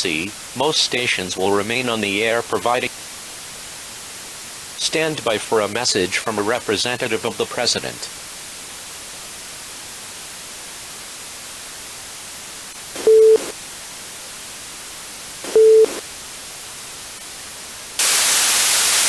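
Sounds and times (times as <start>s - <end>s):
static hiss: 0.0s - 19.0s
short beeps: 13.0s - 13.5s, 15.5s - 16.0s.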